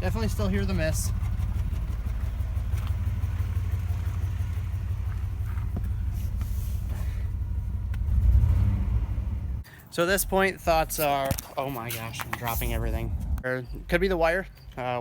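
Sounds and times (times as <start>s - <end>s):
car engine idling with a miss: 0.0s - 9.6s.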